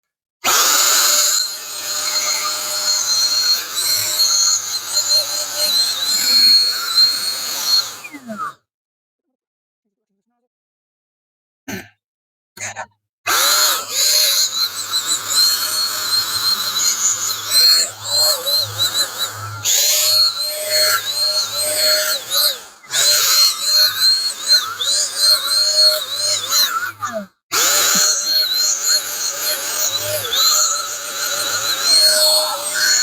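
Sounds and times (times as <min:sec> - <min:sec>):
paint sprayer turbine hissing: 0:00.6 - 0:07.9, 0:13.4 - 0:26.6, 0:27.6 - 0:33.0.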